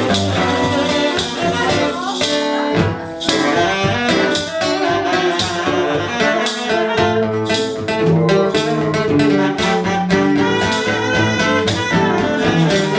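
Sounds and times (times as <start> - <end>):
guitar strumming: 0.0 - 12.9
bowed strings: 7.0 - 12.9.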